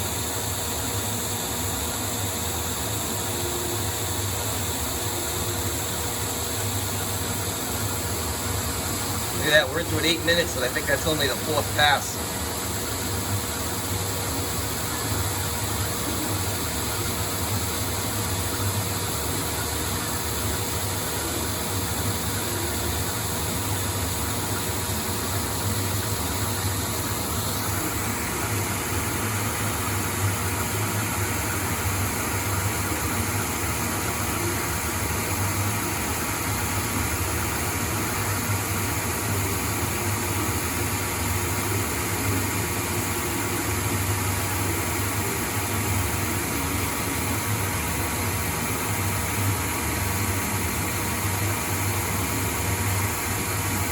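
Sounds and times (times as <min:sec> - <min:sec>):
lathe machine hum: 0:00.1 - 0:53.9
lathe cutting steel: 0:09.4 - 0:12.8.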